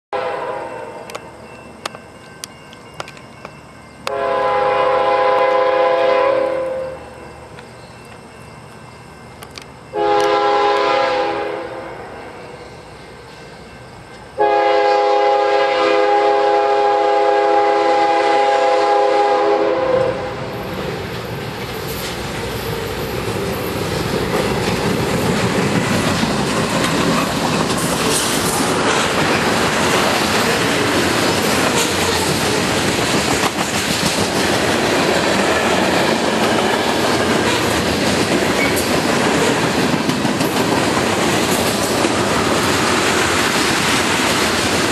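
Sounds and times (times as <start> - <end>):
locomotive air horn: 0.1 - 1.0, 4.1 - 7.1, 9.9 - 12.0, 14.4 - 20.5
train passing rumble: 0.2 - 44.9
wheels clacking over rail joints: 20.7 - 44.9.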